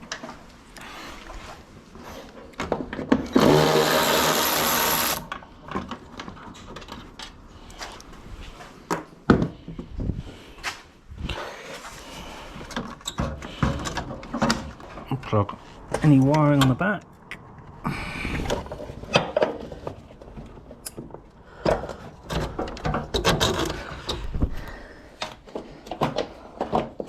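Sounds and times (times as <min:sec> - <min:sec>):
cordless power driver running: 0:03.4 - 0:05.3.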